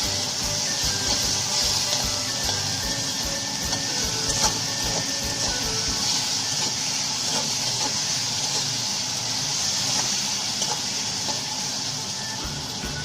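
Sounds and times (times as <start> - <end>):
vegetables sizzling in oil: 0.0 - 13.0.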